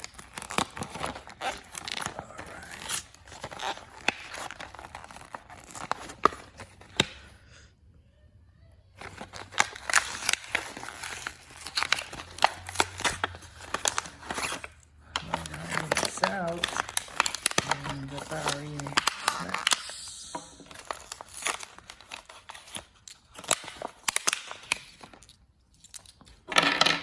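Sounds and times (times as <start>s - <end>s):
packaging being torn open: 0.0s - 7.2s, 9.0s - 26.5s.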